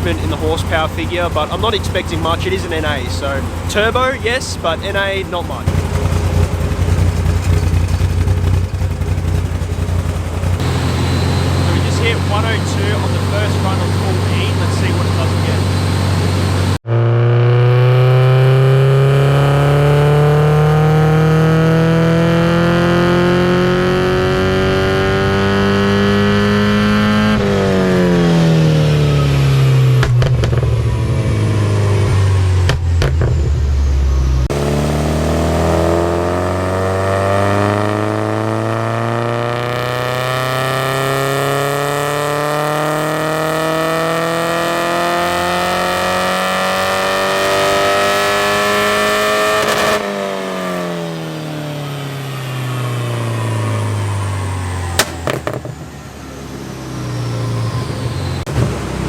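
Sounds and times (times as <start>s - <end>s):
exhaust pops and cracks: 0.0s - 10.7s, 30.0s - 30.9s, 32.6s - 33.7s, 55.0s - 55.8s
car engine revving on a dyno: 10.0s - 59.0s.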